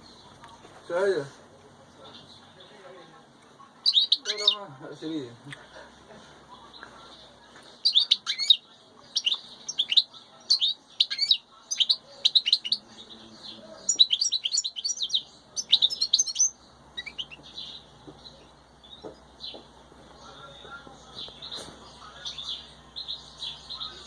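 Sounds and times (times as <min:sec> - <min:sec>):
goldfinch twittering: 0:03.8 - 0:04.7, 0:07.8 - 0:13.0, 0:13.8 - 0:19.6.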